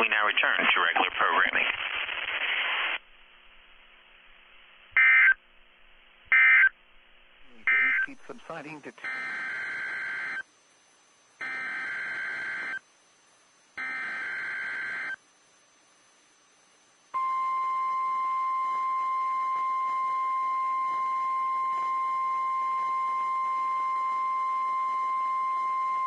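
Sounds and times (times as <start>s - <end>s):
steady warning alarm tone: 7.6s - 10.4s, 11.4s - 12.8s, 13.8s - 15.2s, 17.2s - 26.0s.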